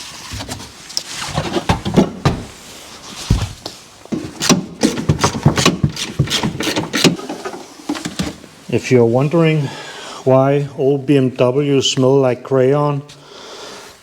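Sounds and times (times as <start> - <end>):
knocks and clicks of hand tools: 3.3 - 8.4.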